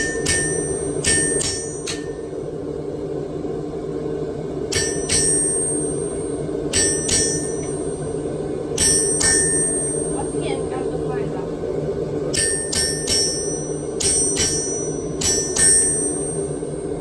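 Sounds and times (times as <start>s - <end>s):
hammer ringing on steel anvil: 0.0s - 2.2s, 4.7s - 10.5s, 12.3s - 16.6s
steady low drone: 0.0s - 17.0s.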